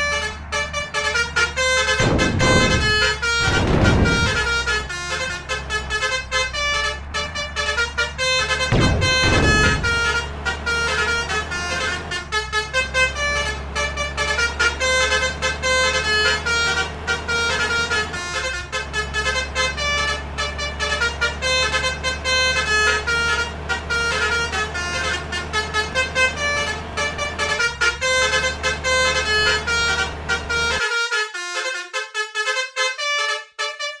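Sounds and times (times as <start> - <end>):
low rumble: 2.0 - 4.9, 8.7 - 10.4
musical air horns playing melody: 16.0 - 34.0.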